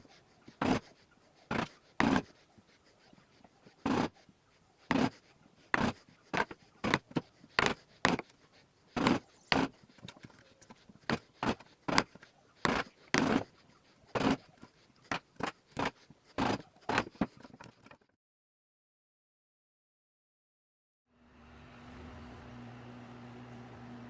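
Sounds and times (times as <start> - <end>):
scraping on wood: 0.0 - 18.0.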